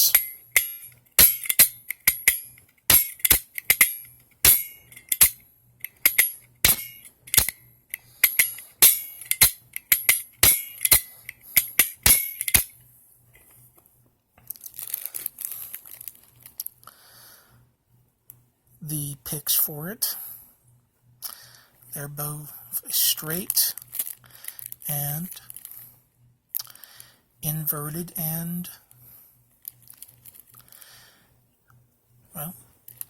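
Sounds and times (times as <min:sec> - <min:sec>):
lock pick gun clicking: 0:00.0 - 0:12.7.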